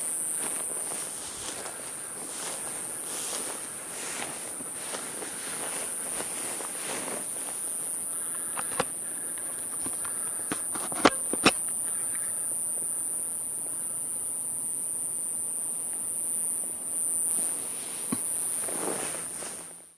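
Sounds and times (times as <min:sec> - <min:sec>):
high-pitched insect hiss: 0:00.0 - 0:19.9
sharp clicks: 0:08.3 - 0:11.8.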